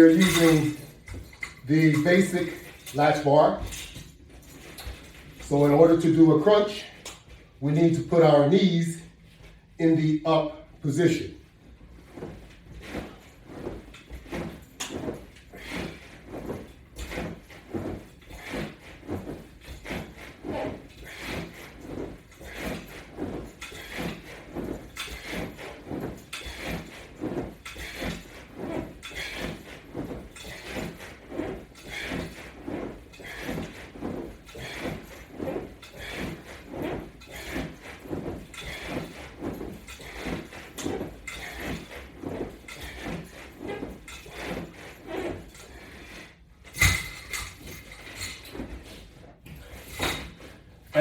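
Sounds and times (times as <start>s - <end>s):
body movement on exercise mat: 0.0s - 51.0s
rhythmic breathing: 12.0s - 46.4s.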